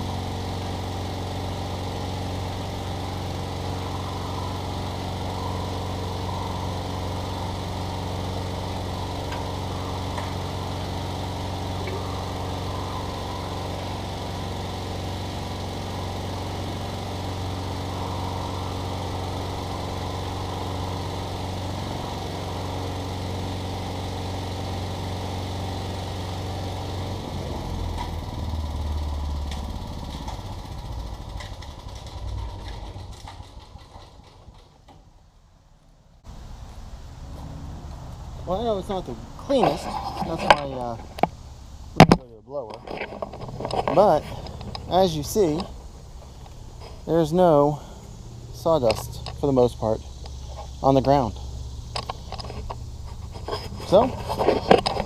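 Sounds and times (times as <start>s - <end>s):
leaf vacuum engine running: 0.0s - 35.2s, 36.2s - 55.0s.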